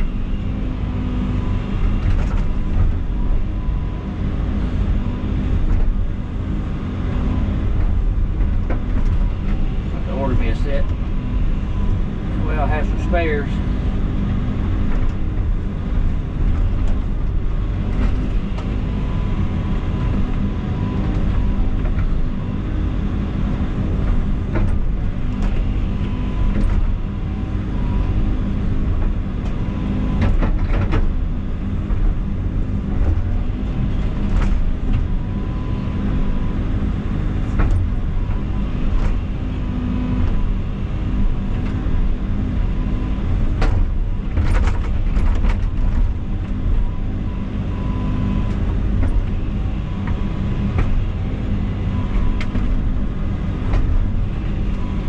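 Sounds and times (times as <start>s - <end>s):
excavator diesel engine running: 0.0s - 55.0s.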